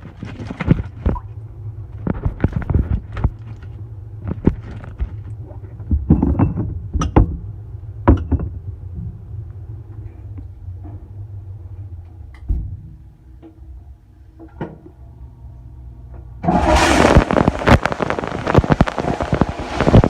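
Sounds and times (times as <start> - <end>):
objects knocking and clattering: 0.0 - 1.3, 2.0 - 7.4
steady low hum: 0.0 - 20.0.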